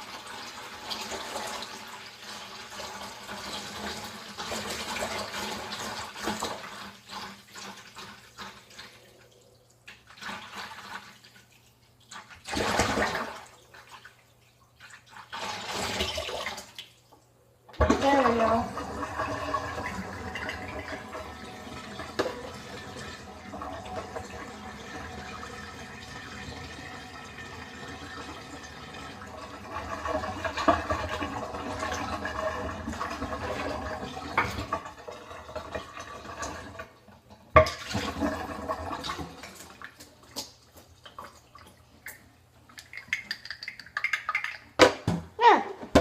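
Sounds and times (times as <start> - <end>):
water pouring into container: 14.9 - 16.9, 18.0 - 37.0, 37.7 - 40.4.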